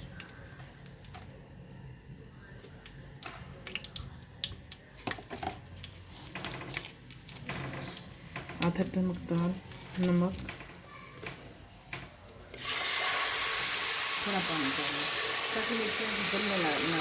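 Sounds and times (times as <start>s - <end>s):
spices sizzling in oil: 12.6s - 17.0s.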